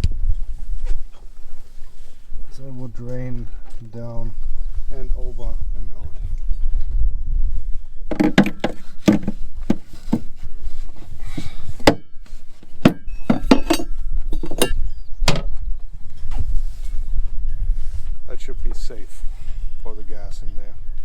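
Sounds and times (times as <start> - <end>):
short rustle: 0.4 - 5.6
hard objects knocking: 8.1 - 10.3, 12.8 - 15.5.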